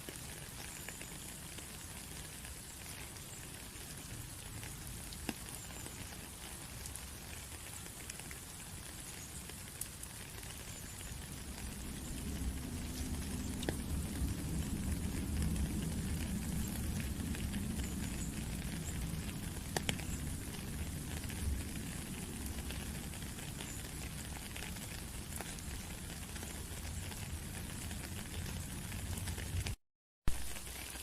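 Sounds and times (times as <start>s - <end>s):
rain patter: 0.0s - 31.0s
low rumble: 11.2s - 22.9s.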